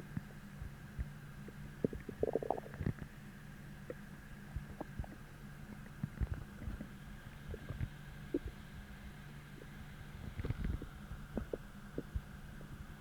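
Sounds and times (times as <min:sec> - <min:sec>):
stomach growling: 0:01.5 - 0:03.1, 0:03.8 - 0:08.7, 0:09.5 - 0:13.0.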